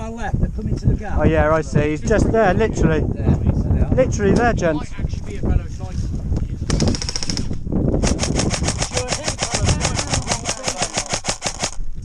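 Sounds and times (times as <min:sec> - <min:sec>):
airsoft gun full-auto burst: 0:06.7 - 0:11.8.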